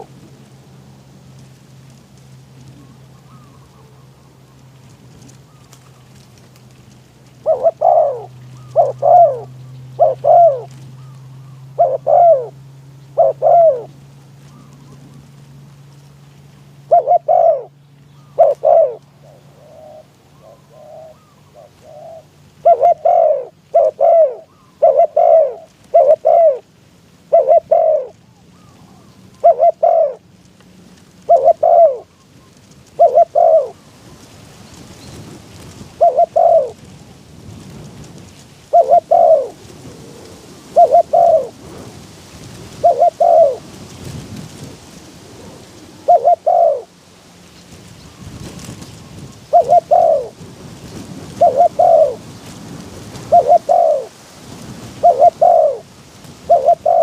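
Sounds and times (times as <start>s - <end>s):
dove cooing: 0.0s - 0.2s, 2.6s - 4.4s, 7.3s - 15.2s, 16.8s - 26.7s, 27.3s - 30.3s, 31.2s - 34.2s, 35.0s - 37.0s, 38.0s - 41.9s, 42.6s - 43.8s, 45.1s - 47.0s, 48.0s - 52.5s, 53.1s - 54.2s, 54.9s - 57.0s.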